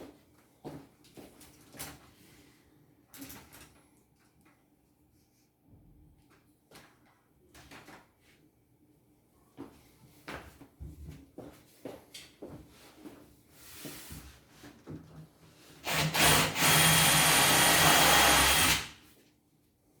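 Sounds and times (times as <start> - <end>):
electric tool motor running: 15.9 - 18.9.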